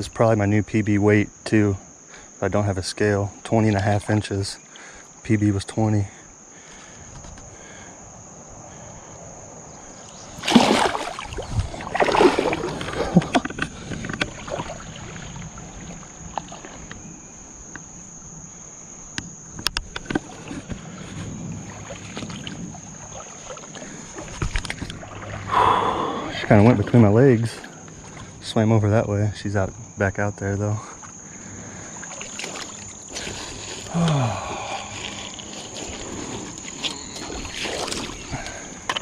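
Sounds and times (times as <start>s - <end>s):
high insect buzz: 0.0s - 39.0s
water splashing and sloshing: 10.0s - 17.2s, 19.7s - 28.4s, 31.4s - 33.9s, 34.8s - 39.0s.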